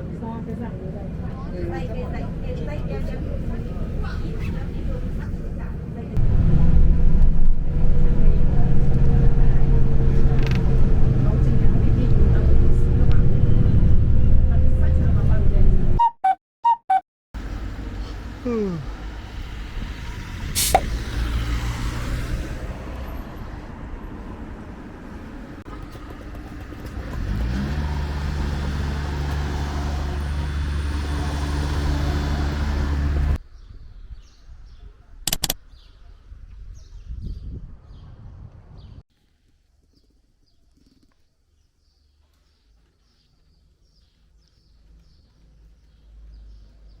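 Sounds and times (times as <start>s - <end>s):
vehicle engine accelerating: 6.2s - 16.0s, 17.4s - 33.4s
sharp click: 35.3s - 35.6s.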